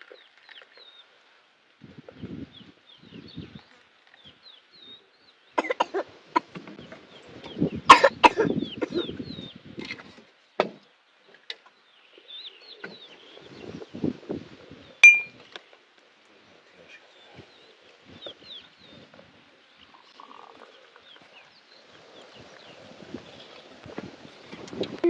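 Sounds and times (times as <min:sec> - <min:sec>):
faint high chirps: 0:15.0 - 0:15.4
knocks and clinks: 0:15.0 - 0:15.4.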